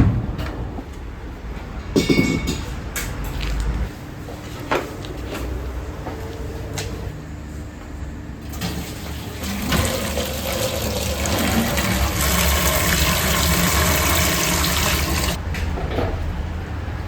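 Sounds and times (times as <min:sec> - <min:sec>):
water running from a tap: 0:09.4 - 0:15.4.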